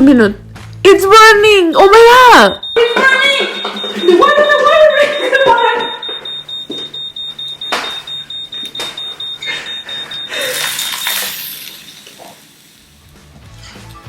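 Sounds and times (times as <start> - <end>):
smoke alarm beeping: 1.1 - 12.9
short bursts of hissing: 10.3 - 13.0.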